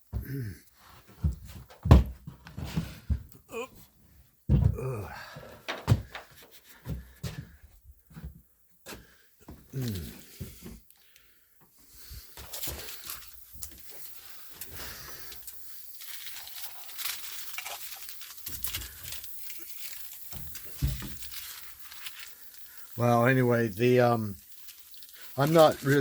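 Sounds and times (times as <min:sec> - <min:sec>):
handling noise rustling and scraping: 0:00.7 - 0:03.4, 0:05.6 - 0:08.9, 0:11.7 - 0:26.0
dull thumps: 0:01.2 - 0:03.4, 0:04.5 - 0:07.5.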